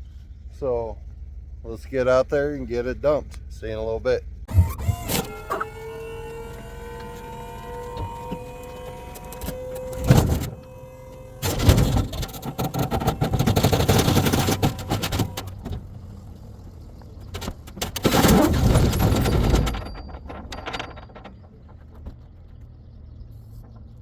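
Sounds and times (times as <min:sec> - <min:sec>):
hydraulic pump whining: 0:04.5 - 0:22.5
wood rounds sliding and clattering: 0:17.0 - 0:22.7.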